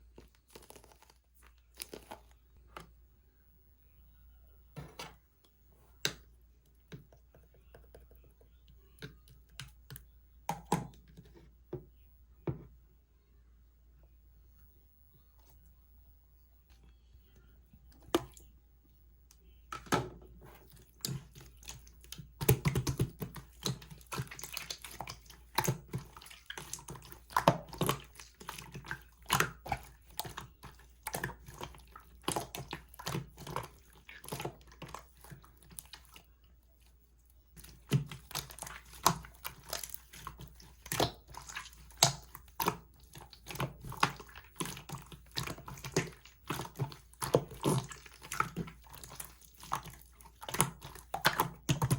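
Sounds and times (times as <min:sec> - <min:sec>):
slime squishing with sticky pops: 0:00.0 - 0:02.4, 0:20.7 - 0:36.3, 0:37.5 - 0:51.9.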